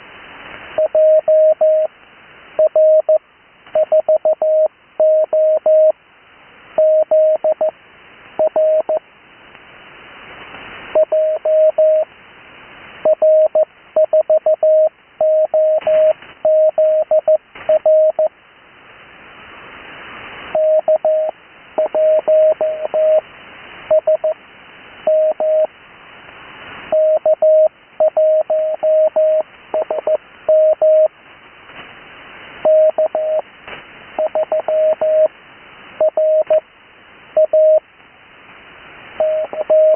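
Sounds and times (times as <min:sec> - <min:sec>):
radio hiss: 0:09.7 - 0:39.9
morse code tone: 0:11.0 - 0:12.1, 0:13.1 - 0:18.3, 0:20.6 - 0:23.2, 0:25.1 - 0:25.7, 0:26.9 - 0:31.1, 0:32.7 - 0:33.4, 0:34.2 - 0:35.3, 0:36.0 - 0:36.6, 0:37.4 - 0:37.8, 0:39.2 - 0:39.9.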